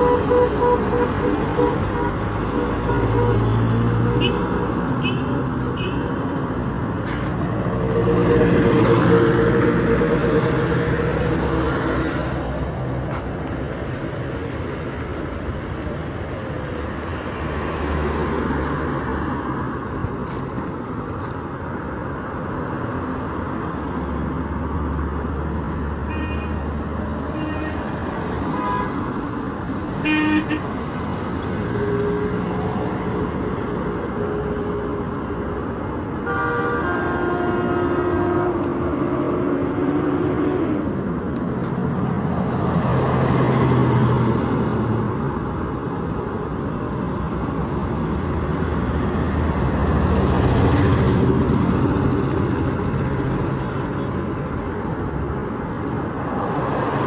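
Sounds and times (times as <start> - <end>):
road traffic: 0.0 - 57.0.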